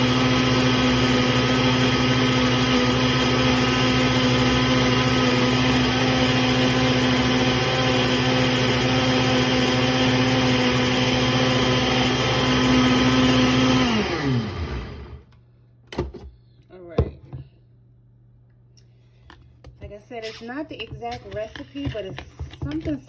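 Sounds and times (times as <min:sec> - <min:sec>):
blender motor running: 0:00.0 - 0:15.3.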